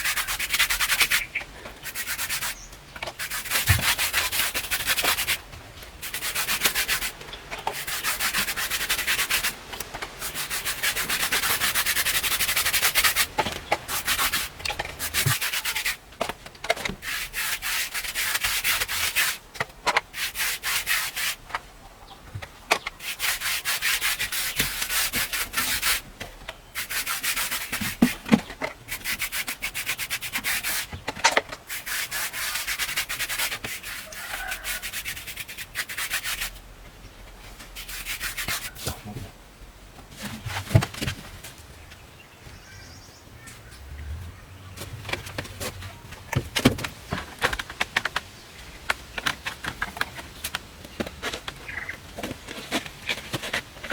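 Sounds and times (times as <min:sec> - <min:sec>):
hand scraping a hard surface: 0:00.0 - 0:05.4, 0:06.0 - 0:16.0, 0:16.9 - 0:19.4, 0:20.1 - 0:21.5, 0:22.9 - 0:26.0, 0:26.8 - 0:36.6, 0:37.5 - 0:39.3.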